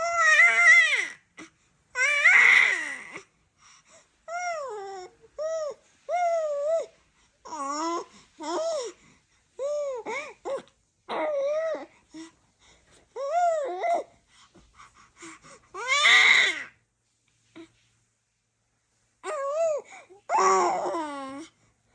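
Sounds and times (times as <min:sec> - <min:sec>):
baby babbling: 0:13.1 - 0:14.1, 0:19.2 - 0:21.6.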